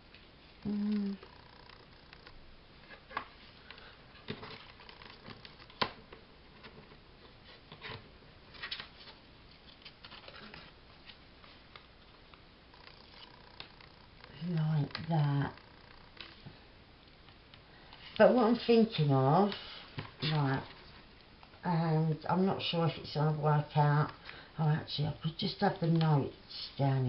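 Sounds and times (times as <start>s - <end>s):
paper rustling: 2.9s - 11.9s.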